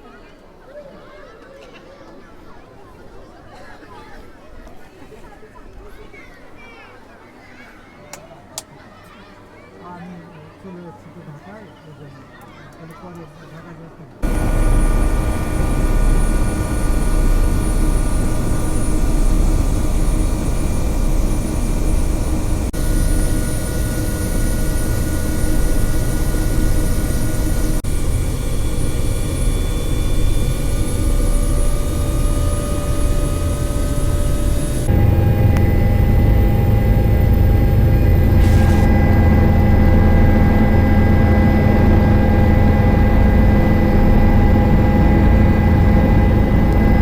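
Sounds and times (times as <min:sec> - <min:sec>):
helicopter drone: 0:14.2 - 0:47.0.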